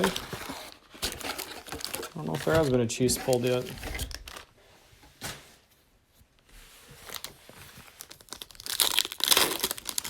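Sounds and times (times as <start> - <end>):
packaging rustling: 0.0 - 4.5, 7.0 - 10.0.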